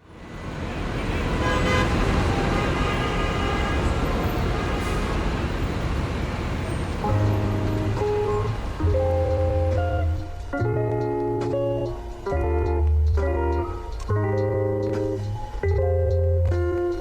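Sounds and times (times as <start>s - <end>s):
city street traffic: 0.0s - 17.0s
car horn toots: 0.7s - 5.2s
guitar music: 7.0s - 17.0s.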